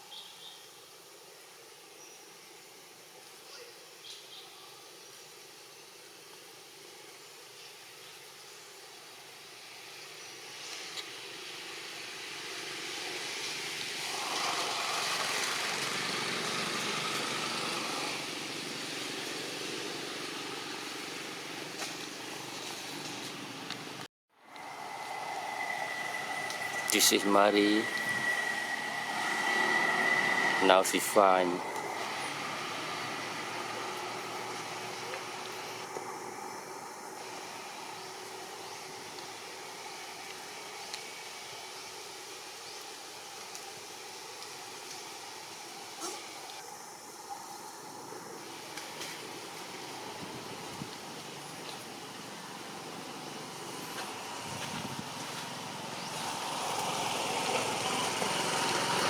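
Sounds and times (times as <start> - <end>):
hiss-like background noise: 0.0 - 59.0
motor vehicle passing by: 12.2 - 23.4, 24.7 - 38.8, 52.3 - 59.0.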